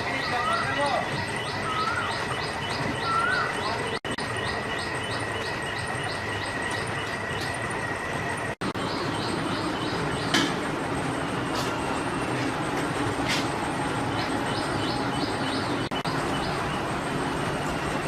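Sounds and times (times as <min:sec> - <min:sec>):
rapid high chirping: 0:00.0 - 0:07.6
noisy background: 0:00.0 - 0:18.0
steady high whine: 0:00.0 - 0:18.0.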